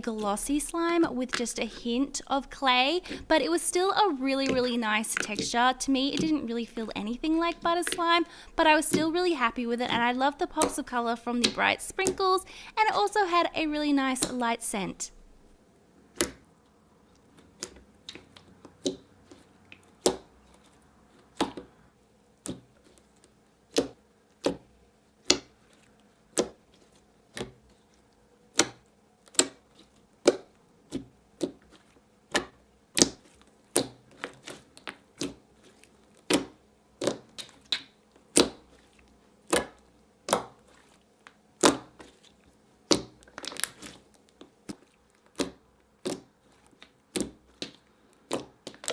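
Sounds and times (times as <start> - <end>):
slime clicking and popping: 17.3 - 19.1, 19.7 - 20.5, 23.7 - 25.6, 26.3 - 26.7, 28.5 - 35.4, 36.2 - 40.7, 41.3 - 42.2, 42.8 - 48.9.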